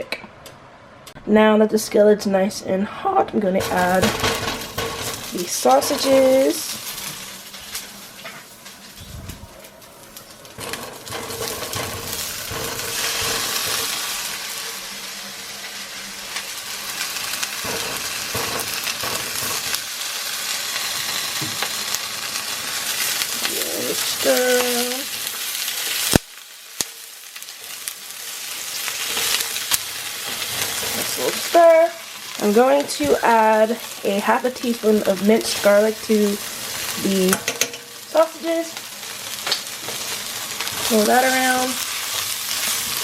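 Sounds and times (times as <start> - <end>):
utensil scraping and clattering: 3.6 - 14.8, 17.1 - 19.8, 28.6 - 31.6
sausages sizzling in oil: 3.6 - 43.0.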